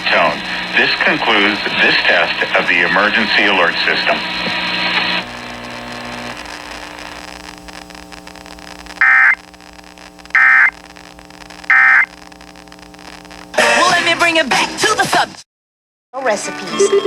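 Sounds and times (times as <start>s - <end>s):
loud bursts of data tones: 0.0s - 13.6s
hum: 0.0s - 13.9s
low radio static: 0.0s - 15.4s.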